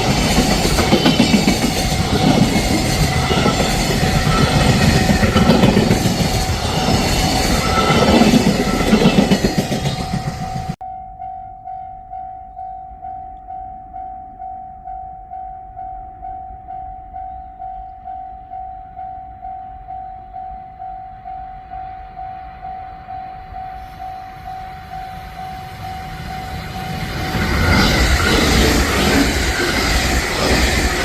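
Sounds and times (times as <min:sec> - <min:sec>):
approaching train rushing: 0:00.0 - 0:10.8, 0:21.1 - 0:31.0
level-crossing warning bell ringing: 0:00.0 - 0:31.0.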